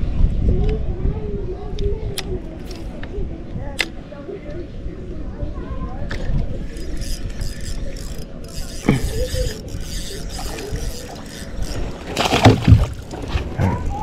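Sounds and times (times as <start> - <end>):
fishing gear knocking and clicking: 6.1 - 14.0.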